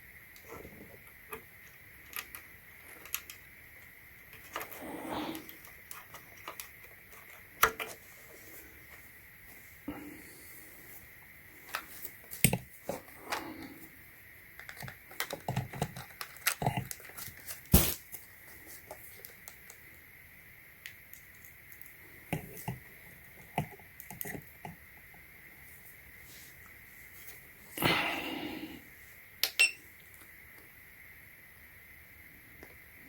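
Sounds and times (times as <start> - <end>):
small objects clicking and tapping: 1.3 - 4.7, 5.4 - 8.0, 14.6 - 17.9, 23.4 - 24.8.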